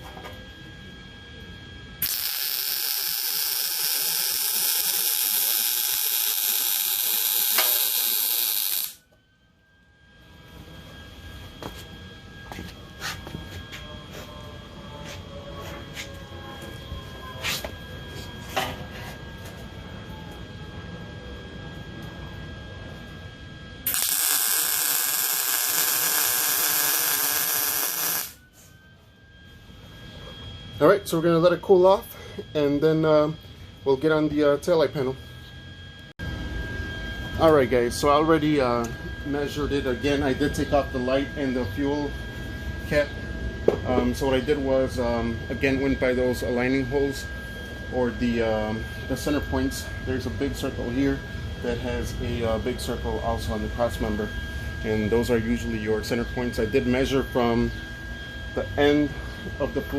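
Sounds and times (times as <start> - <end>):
electric welding arc hissing: 2.0 - 9.0, 23.8 - 28.4.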